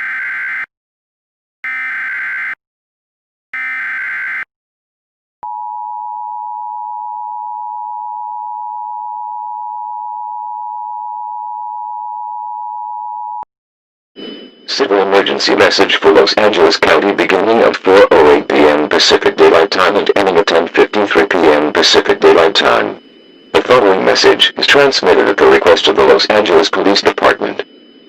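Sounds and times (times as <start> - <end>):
two-tone alarm: 1.6 - 2.6, 3.6 - 4.5, 14.2 - 28.0
digital data bursts: 14.7 - 27.6.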